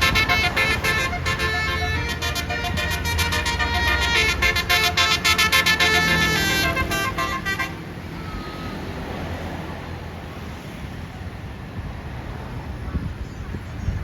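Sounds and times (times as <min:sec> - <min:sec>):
multi-tone bus air horn melody: 0:00.0 - 0:08.9
steady traffic noise: 0:00.0 - 0:14.0.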